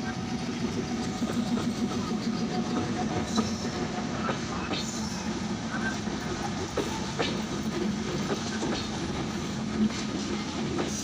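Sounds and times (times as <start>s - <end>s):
train rumbling on rails: 0.0s - 11.0s.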